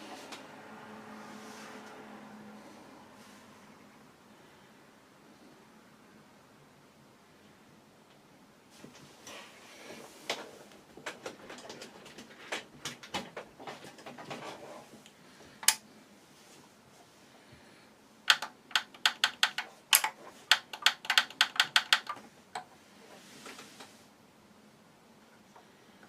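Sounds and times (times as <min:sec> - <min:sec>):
sharp clicks of controls: 0:15.6 - 0:15.8.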